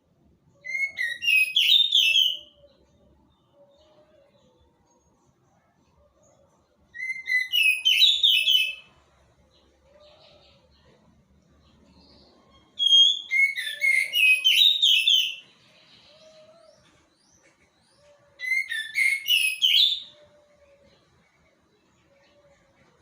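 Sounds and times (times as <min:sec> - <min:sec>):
songbird whistling: 0:00.6 - 0:02.6, 0:07.0 - 0:08.9, 0:12.8 - 0:15.4, 0:18.4 - 0:20.3.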